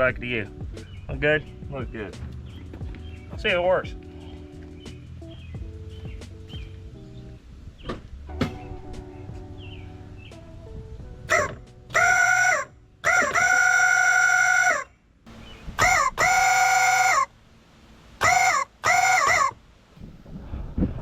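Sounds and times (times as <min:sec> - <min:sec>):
rubber-chicken horn squawking: 0:11.3 - 0:14.9, 0:15.8 - 0:17.3, 0:18.2 - 0:19.6.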